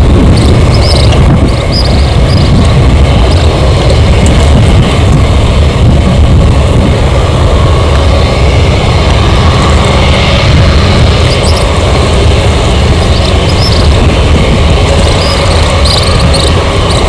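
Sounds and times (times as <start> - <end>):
jet engines running: 0.0 - 17.0.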